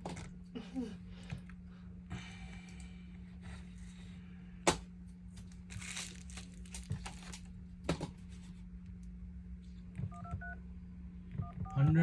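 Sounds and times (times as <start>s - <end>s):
steady low hum: 0.0s - 12.0s
crinkling and rustling: 5.3s - 8.6s.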